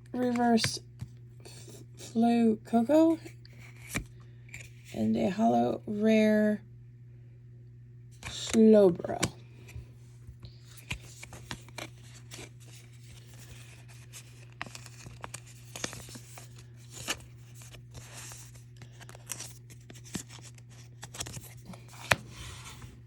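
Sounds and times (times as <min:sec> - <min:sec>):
steady low hum: 0:00.0 - 0:23.0
cards and wrapper rustling: 0:10.5 - 0:23.0.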